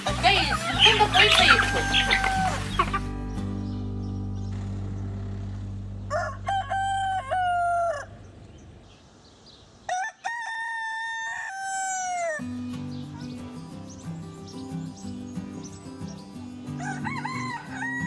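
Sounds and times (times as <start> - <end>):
rooster crowing: 0.6 - 2.9, 6.1 - 8.3, 9.9 - 12.4, 16.8 - 18.0.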